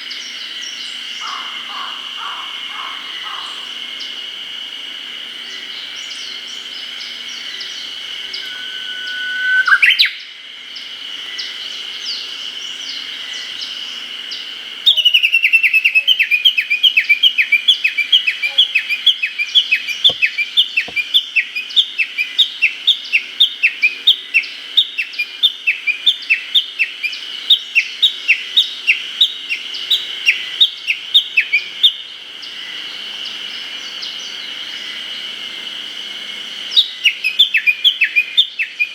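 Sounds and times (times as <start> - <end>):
bird whistled calls: 8.3 - 10.3, 36.8 - 38.9.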